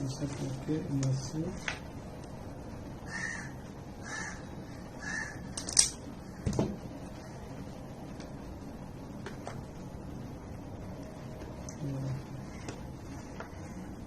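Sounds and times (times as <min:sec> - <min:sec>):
bird calling: 0:03.0 - 0:05.6.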